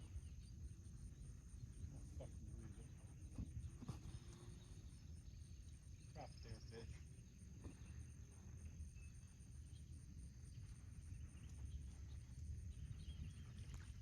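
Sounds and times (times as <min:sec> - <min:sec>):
cricket chirping: 0:00.0 - 0:14.0
wind rumble on microphone: 0:09.7 - 0:14.0.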